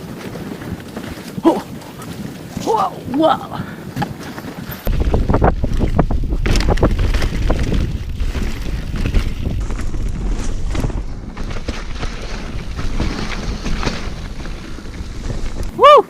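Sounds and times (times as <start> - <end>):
wind rumbling on microphone: 0.0 - 16.0
bike knocks and clatter: 4.0 - 15.7.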